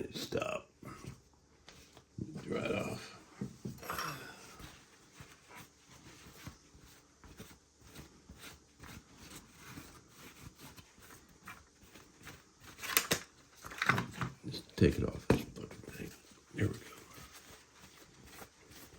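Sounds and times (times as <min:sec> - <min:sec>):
towel rubbing model car body: 0:15.8 - 0:18.9.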